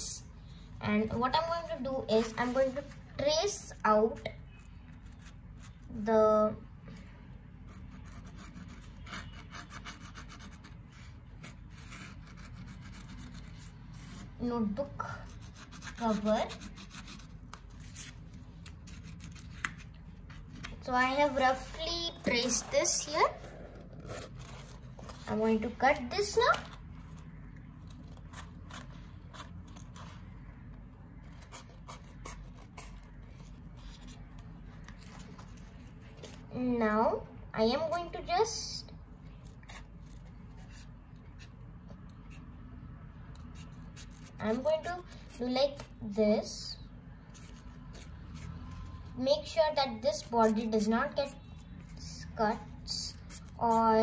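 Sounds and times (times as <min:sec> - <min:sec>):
scratchy drawing strokes on foam: 0:07.6 - 0:18.2, 0:20.3 - 0:25.9, 0:39.4 - 0:41.6, 0:43.4 - 0:46.6, 0:47.2 - 0:49.2, 0:49.8 - 0:54.0.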